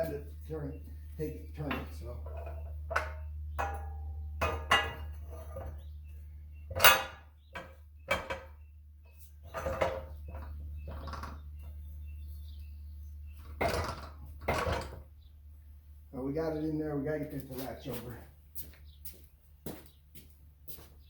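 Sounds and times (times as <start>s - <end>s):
steady low hum: 0.0s - 21.0s
metal pipe clanking: 1.5s - 5.9s, 6.7s - 8.6s, 9.4s - 11.4s, 13.4s - 15.0s.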